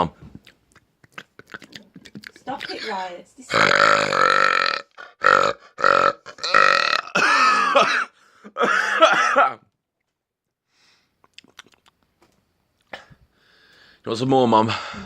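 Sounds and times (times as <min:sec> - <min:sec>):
man burping loudly: 0:03.5 - 0:09.6.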